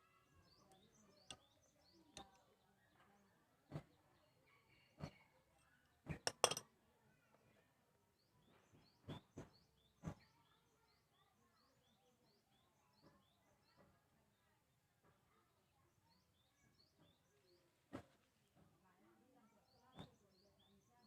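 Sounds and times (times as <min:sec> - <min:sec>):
sharp clicks and knocks: 0:06.1 - 0:06.6.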